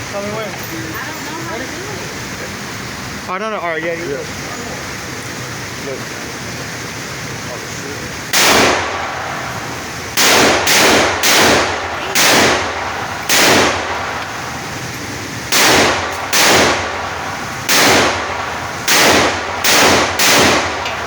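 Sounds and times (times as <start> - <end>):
rifle shots with echo: 8.3 - 21.0.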